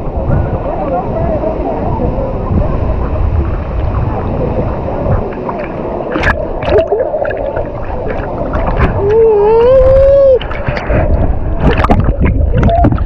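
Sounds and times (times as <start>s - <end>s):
water splashing: 0.0s - 13.0s
person calling out: 9.0s - 10.4s.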